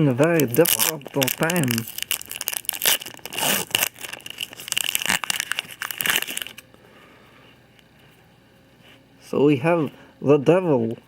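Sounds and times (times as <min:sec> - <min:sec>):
plastic wrapper crinkling and tearing: 0:00.2 - 0:06.6.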